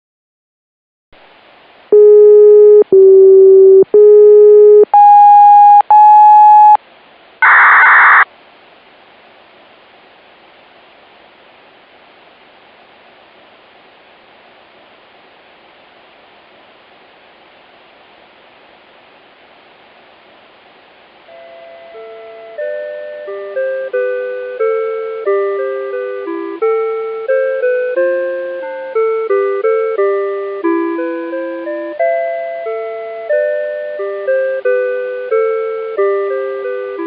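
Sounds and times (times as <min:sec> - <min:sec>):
loud electronic beeps: 0:07.4 - 0:08.2
radio hiss: 0:07.4 - 0:08.2.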